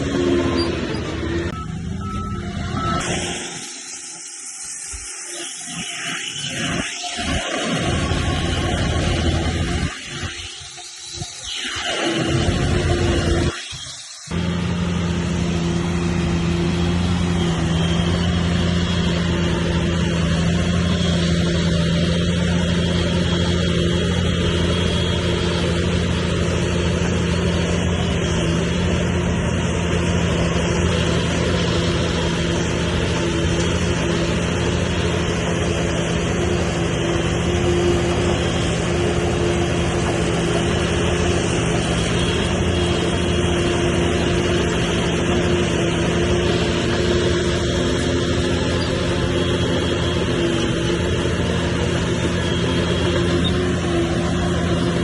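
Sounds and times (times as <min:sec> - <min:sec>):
heavy diesel engine running: 0:00.0 - 0:05.6, 0:06.5 - 0:11.4, 0:12.1 - 0:55.0.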